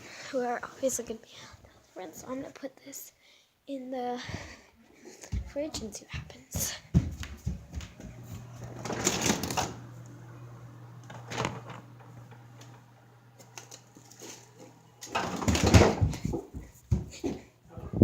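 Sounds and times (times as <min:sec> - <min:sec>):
steady low hum: 0:06.6 - 0:15.1.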